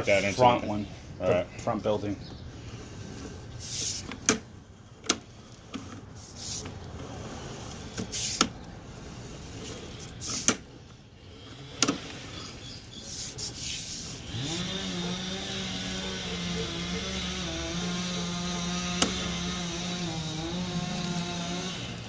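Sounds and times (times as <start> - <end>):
short hissing rushes: 3.6 - 4.2, 6.2 - 6.7, 7.9 - 8.5, 13.0 - 16.3.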